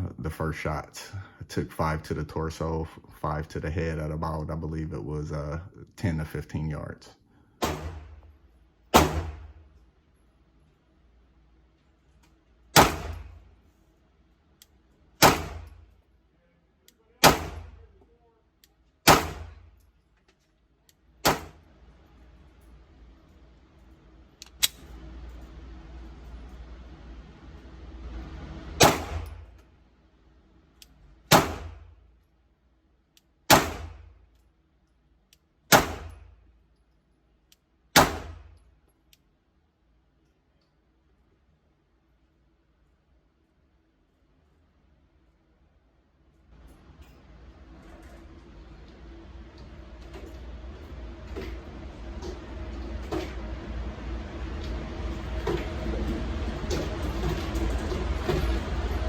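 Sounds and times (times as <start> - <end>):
pistol shots: 7.6 - 8.2, 8.9 - 9.5, 12.8 - 13.4, 15.2 - 15.8, 17.2 - 17.8, 19.0 - 19.6, 21.2 - 21.6, 28.8 - 29.4, 31.3 - 31.8, 33.5 - 34.0, 35.7 - 36.3, 38.0 - 38.4.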